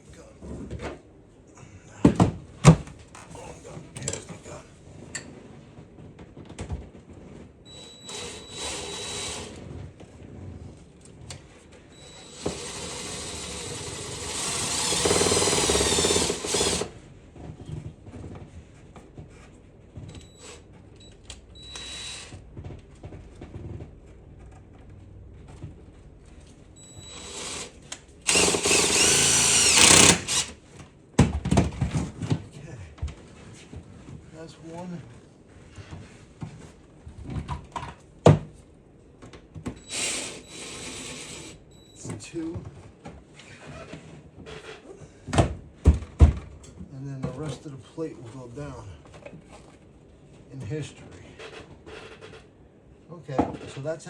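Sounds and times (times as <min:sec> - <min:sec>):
power drill driving screws: 0:07.7 - 0:09.6, 0:12.0 - 0:16.9, 0:21.6 - 0:22.4, 0:27.0 - 0:30.6, 0:39.8 - 0:41.6.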